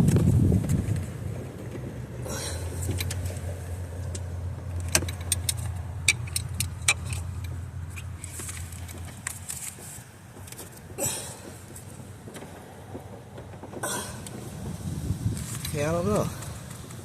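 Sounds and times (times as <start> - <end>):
vehicle engine humming: 0.0 - 17.0
ratchet clicking: 4.0 - 9.8.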